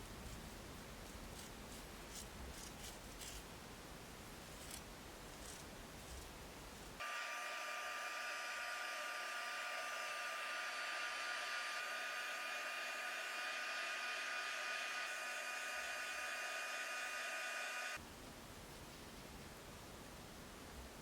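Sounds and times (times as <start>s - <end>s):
electric blower running: 7.0s - 18.0s.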